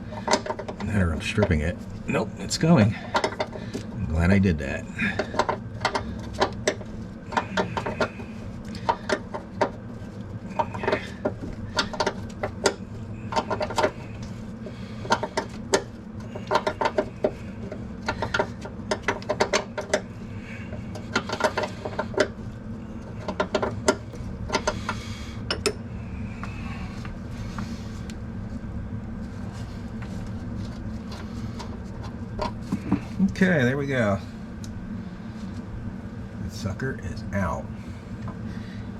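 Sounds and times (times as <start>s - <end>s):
steady low hum: 0.0s - 38.9s.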